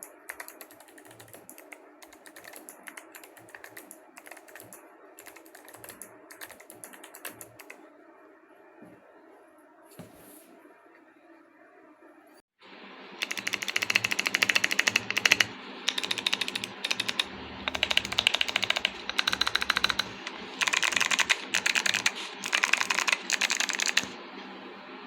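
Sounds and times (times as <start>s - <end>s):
mechanical keyboard typing: 0.0s - 7.8s, 13.2s - 24.2s.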